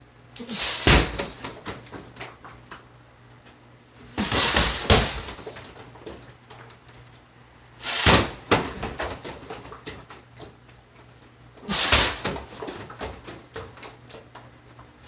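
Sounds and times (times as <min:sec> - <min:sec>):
loud thumps with noise rush: 0:00.7 - 0:01.4, 0:04.2 - 0:05.4, 0:07.9 - 0:08.9, 0:11.8 - 0:12.4.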